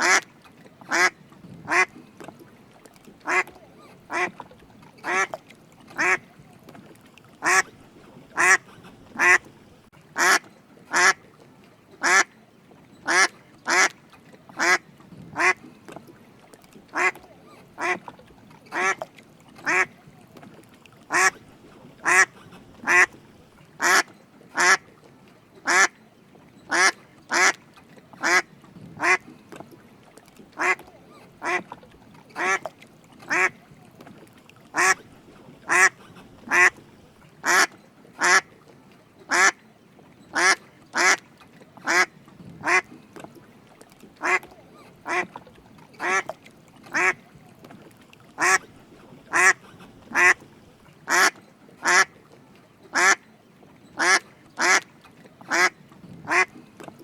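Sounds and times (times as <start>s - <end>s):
duck quacking: 0.0s - 0.2s, 0.9s - 1.1s, 1.7s - 1.9s, 3.2s - 3.5s, 4.1s - 4.3s, 5.0s - 5.3s, 6.0s - 6.2s, 7.4s - 7.7s, 8.4s - 9.5s, 10.2s - 11.2s, 13.1s - 13.9s, 16.9s - 17.2s, 17.8s - 18.0s, 18.7s - 19.0s, 21.1s - 21.4s, 22.0s - 23.2s, 23.8s - 24.8s, 25.6s - 25.9s, 29.0s - 29.2s, 30.6s - 30.8s, 31.4s - 31.6s, 32.4s - 32.7s, 33.3s - 33.6s, 34.8s - 35.0s, 35.6s - 36.8s, 37.4s - 38.4s, 39.3s - 39.6s, 40.4s - 41.2s, 41.8s - 42.9s, 44.2s - 45.3s, 46.0s - 46.3s, 46.9s - 47.2s, 48.4s - 48.6s, 49.3s - 50.4s, 51.1s - 52.1s, 53.0s - 53.2s, 54.0s - 54.8s, 55.5s - 55.7s, 56.3s - 56.5s.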